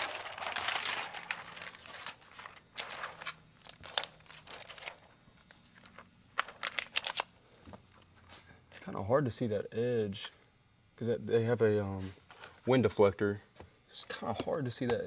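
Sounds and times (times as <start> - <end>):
crinkling handling noise: 0.0 - 8.5, 12.0 - 12.7.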